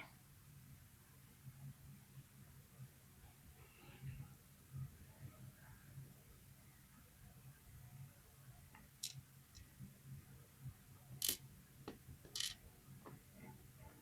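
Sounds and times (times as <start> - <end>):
faint low hum: 0.0 - 14.0
small metal parts clicking: 11.2 - 11.4, 12.3 - 12.6.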